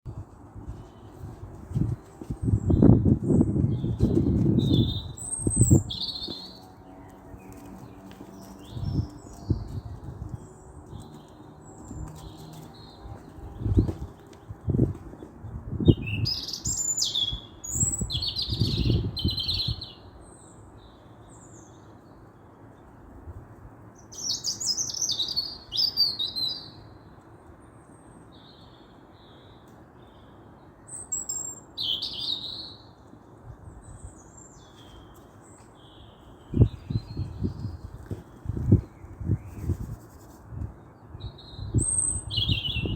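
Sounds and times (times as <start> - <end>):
small birds chirping: 0.8 - 22.9.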